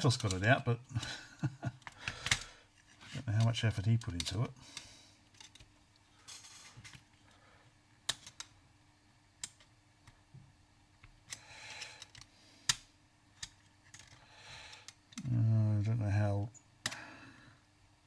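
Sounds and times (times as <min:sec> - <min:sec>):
clicks of small plastic and metal parts: 0:01.8 - 0:02.5, 0:03.4 - 0:05.7, 0:08.1 - 0:08.6, 0:09.4 - 0:10.2, 0:11.0 - 0:15.3.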